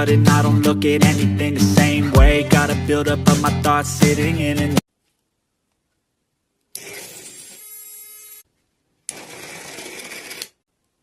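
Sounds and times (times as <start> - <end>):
small electric motor running: 6.8 - 8.4, 9.1 - 10.6.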